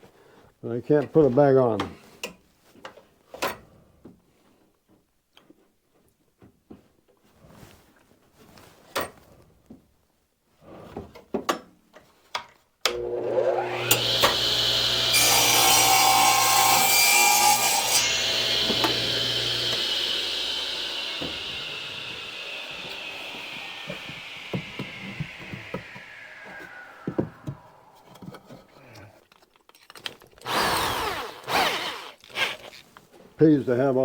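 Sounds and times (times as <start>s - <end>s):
electric power saw cutting: 12.9s - 28.4s, 30.4s - 32.8s.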